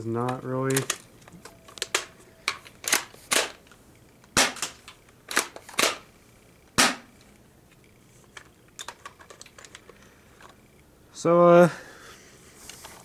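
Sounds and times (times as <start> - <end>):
airsoft shotgun shots: 4.4 - 4.8, 6.8 - 7.1.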